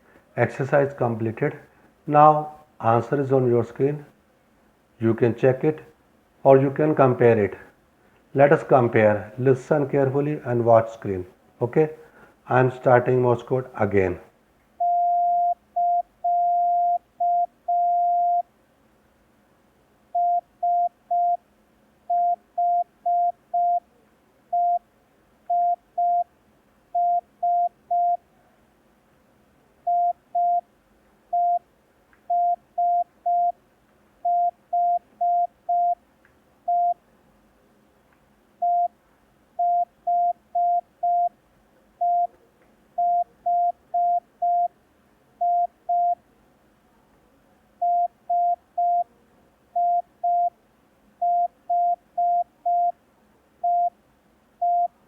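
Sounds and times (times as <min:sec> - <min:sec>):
morse code beeps: 0:14.8 - 0:18.4, 0:20.2 - 0:21.4, 0:22.1 - 0:23.8, 0:24.5 - 0:24.8, 0:25.5 - 0:26.3, 0:27.0 - 0:28.2, 0:29.9 - 0:30.6, 0:31.4 - 0:31.6, 0:32.3 - 0:33.6, 0:34.2 - 0:36.0, 0:36.7 - 0:37.0, 0:38.6 - 0:38.9, 0:39.6 - 0:41.3, 0:42.0 - 0:42.3, 0:43.0 - 0:44.7, 0:45.4 - 0:46.2, 0:47.8 - 0:49.0, 0:49.8 - 0:50.5, 0:51.2 - 0:52.9, 0:53.6 - 0:53.9, 0:54.6 - 0:54.9.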